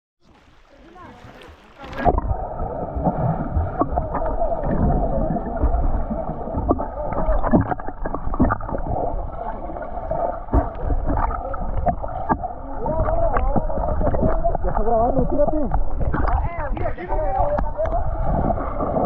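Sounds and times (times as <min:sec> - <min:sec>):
small splashes and knocks: 0:00.2 - 0:08.9
muffled river water rushing: 0:00.2 - 0:19.0.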